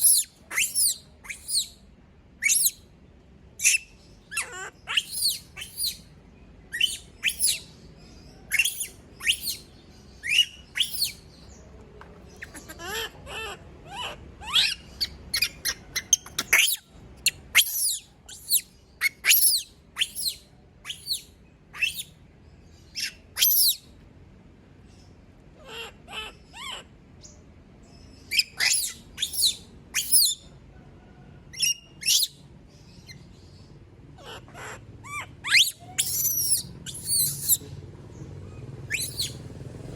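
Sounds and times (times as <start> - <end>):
monkey screaming: 0.0 - 1.7, 3.6 - 6.0, 6.8 - 7.7, 8.5 - 9.6, 10.2 - 11.2, 12.4 - 16.9, 17.5 - 21.2, 23.0 - 23.8, 25.6 - 26.9, 28.3 - 30.4, 34.2 - 37.7, 38.5 - 39.4.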